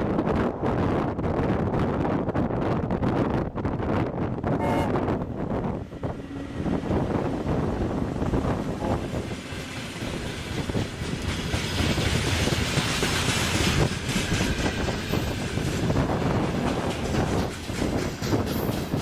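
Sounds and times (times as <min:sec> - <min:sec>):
wind buffeting microphone: 0:00.0 - 0:19.0
train wheels clattering on rails: 0:05.7 - 0:19.0.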